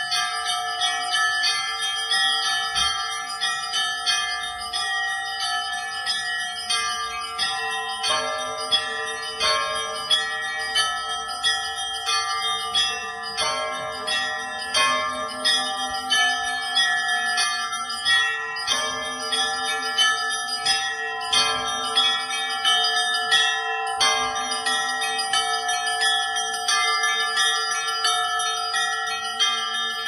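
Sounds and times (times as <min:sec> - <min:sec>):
deep church bells humming: 0:00.0 - 0:30.0
small high bells striking: 0:00.0 - 0:30.0.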